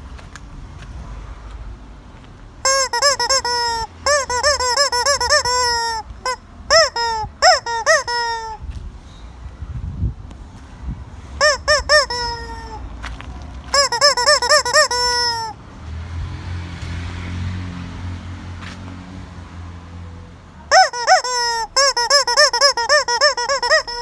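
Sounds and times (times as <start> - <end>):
low steady rumble: 0.0 - 15.9
hen cackling: 2.6 - 8.6, 11.4 - 13.1, 13.7 - 15.6, 20.7 - 24.0.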